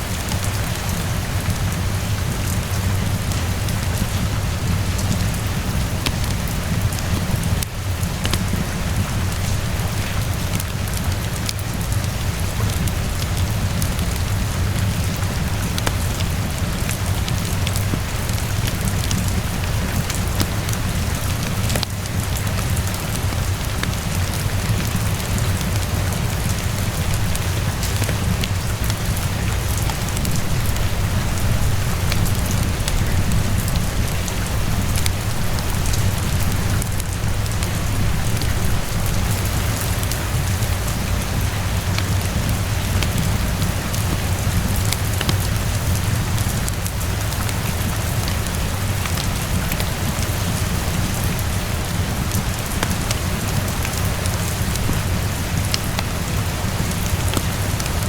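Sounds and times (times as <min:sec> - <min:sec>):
steady rainfall: 0:00.0 - 0:58.0.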